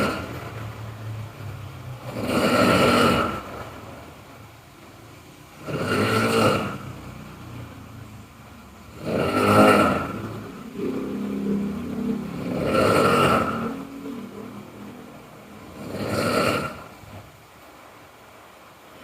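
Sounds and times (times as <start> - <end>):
person snoring loudly: 0.0 - 0.6, 2.0 - 3.6, 5.6 - 7.4, 8.9 - 17.3
low pitched drone: 9.2 - 17.3.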